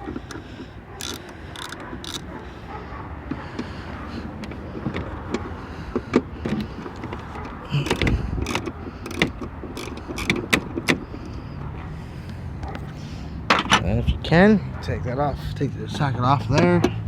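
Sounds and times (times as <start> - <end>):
ratchet wrench clicking: 1.0 - 2.2, 7.8 - 10.7.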